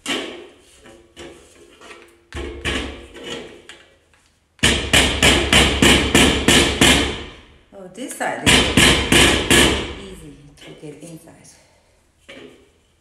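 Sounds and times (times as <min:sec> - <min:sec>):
hammer knocking wood: 0:04.6 - 0:07.3, 0:08.5 - 0:10.0.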